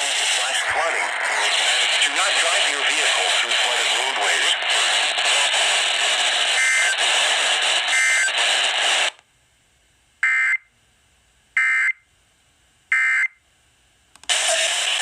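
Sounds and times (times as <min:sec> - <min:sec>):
radio static hiss: 0:00.0 - 0:09.2, 0:14.3 - 0:15.0.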